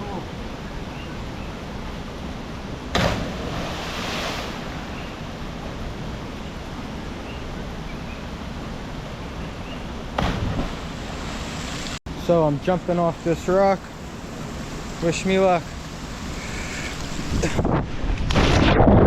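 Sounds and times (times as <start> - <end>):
water rushing: 0.0 - 9.2, 9.9 - 17.7
wind on microphone: 16.2 - 19.0.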